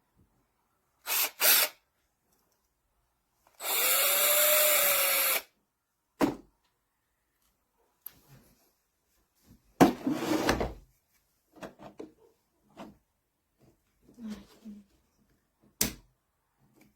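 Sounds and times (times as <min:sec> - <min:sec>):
cordless drill motor whining: 0:01.1 - 0:01.8, 0:03.6 - 0:05.5.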